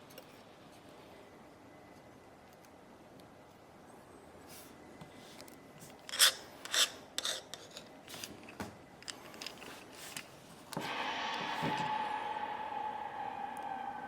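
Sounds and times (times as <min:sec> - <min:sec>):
small tool scraping metal casing: 0:05.9 - 0:07.9
steady humming tone: 0:08.8 - 0:14.0.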